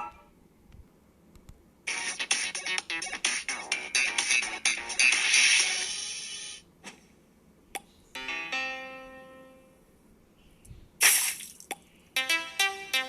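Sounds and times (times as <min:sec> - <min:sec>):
held keyboard chord: 0:08.2 - 0:09.8, 0:12.2 - 0:13.0
keyboard music: 0:08.2 - 0:09.9, 0:12.2 - 0:13.0.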